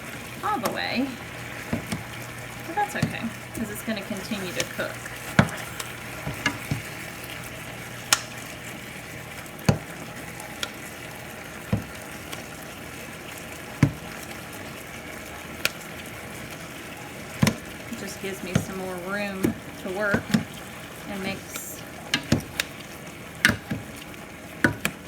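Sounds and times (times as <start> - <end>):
chicken sizzling in a pan: 0.0 - 25.0
chopper tool knocking in pan: 2.8 - 7.0, 9.6 - 9.9, 11.7 - 12.0, 13.8 - 14.2, 17.4 - 17.7, 22.1 - 22.7, 23.4 - 24.0, 24.6 - 25.0.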